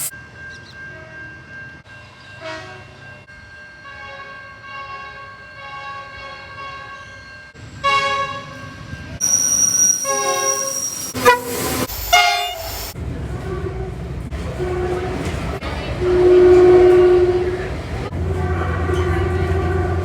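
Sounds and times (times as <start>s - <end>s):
train horn blasts: 2.4s - 2.9s, 3.8s - 7.2s, 7.8s - 8.6s, 10.0s - 12.6s, 13.4s - 20.0s.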